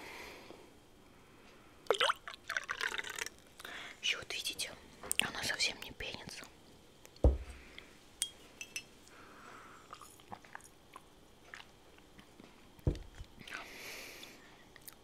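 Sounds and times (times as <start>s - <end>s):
low thump: 7.2s - 7.6s, 12.9s - 13.2s
chewing and biting food: 9.9s - 12.4s.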